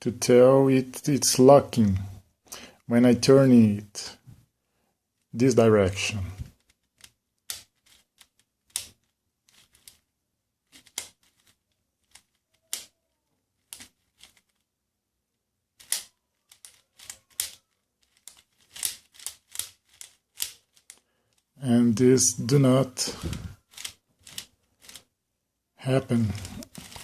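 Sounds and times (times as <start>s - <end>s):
speed cube clicking: 6.6s - 10.0s, 10.7s - 12.9s, 15.8s - 21.5s, 23.2s - 25.0s.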